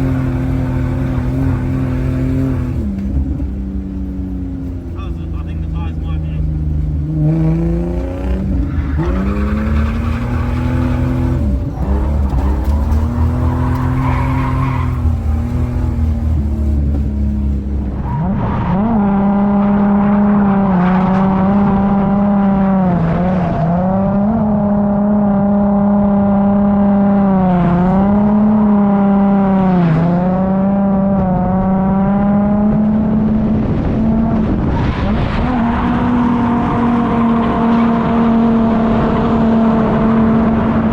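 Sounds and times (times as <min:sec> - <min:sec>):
car engine at high revs: 0:00.0 - 0:40.9
tyre squeal: 0:08.0 - 0:18.3.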